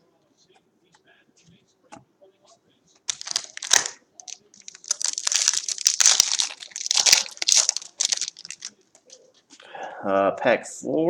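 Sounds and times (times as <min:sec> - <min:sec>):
foil wrapper tearing and crinkling: 0:03.1 - 0:08.8.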